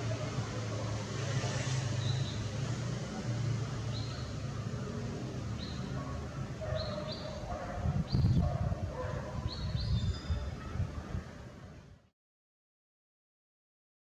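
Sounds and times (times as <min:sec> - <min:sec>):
small birds chirping: 0:03.8 - 0:08.4, 0:09.3 - 0:10.6.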